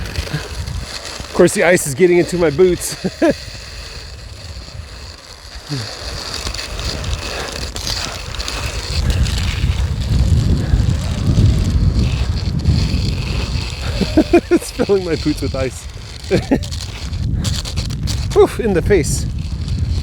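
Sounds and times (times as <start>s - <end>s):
faint crackling haze: 0.0s - 20.0s
wind buffeting microphone: 0.0s - 20.0s.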